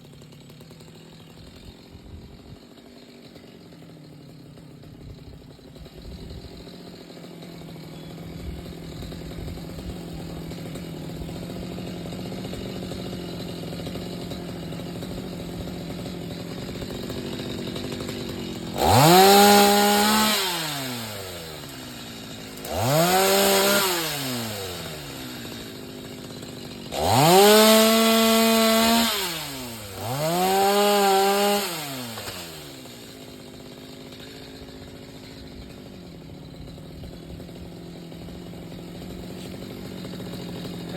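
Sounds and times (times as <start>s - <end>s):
chainsaw revving: 0.0s - 40.9s.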